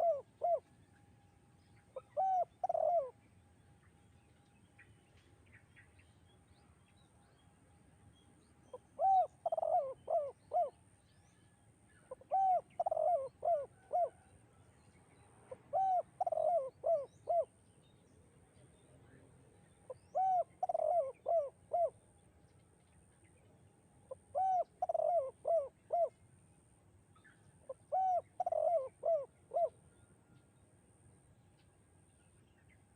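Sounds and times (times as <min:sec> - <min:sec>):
dove cooing: 0:00.0 - 0:00.7, 0:01.9 - 0:03.2, 0:08.7 - 0:10.8, 0:12.1 - 0:14.4, 0:15.5 - 0:17.5, 0:19.9 - 0:22.0, 0:24.1 - 0:26.2, 0:27.7 - 0:29.8.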